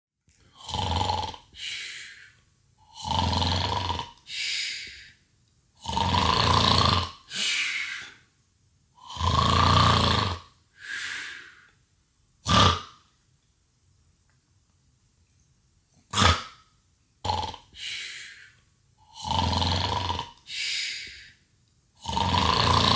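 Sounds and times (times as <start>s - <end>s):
person fake snoring: 0.5s - 5.2s, 5.8s - 8.2s, 9.0s - 11.6s, 12.4s - 13.0s, 16.1s - 16.6s, 17.2s - 21.4s, 22.0s - 22.9s.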